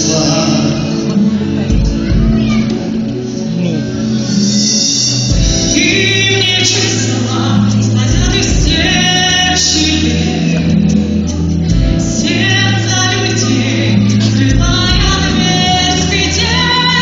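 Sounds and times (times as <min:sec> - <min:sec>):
instrumental backing track: 0:00.0 - 0:17.0
person singing: 0:05.3 - 0:17.0.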